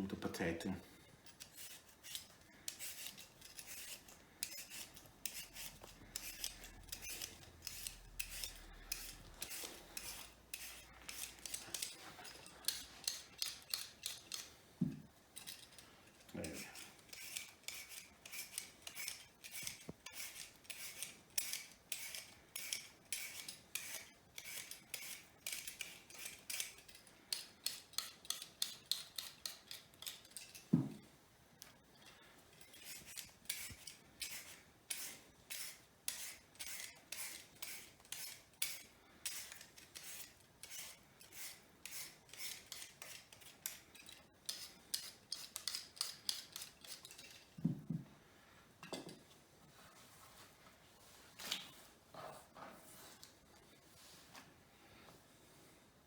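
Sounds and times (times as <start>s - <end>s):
peeler scraping potato skin: 1.2s - 14.6s, 15.4s - 30.8s, 32.5s - 47.6s.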